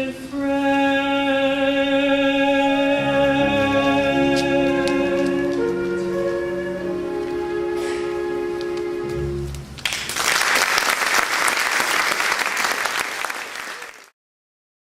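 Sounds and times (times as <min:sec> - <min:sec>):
held music chord: 0:00.6 - 0:09.8
audience applause: 0:09.8 - 0:14.1.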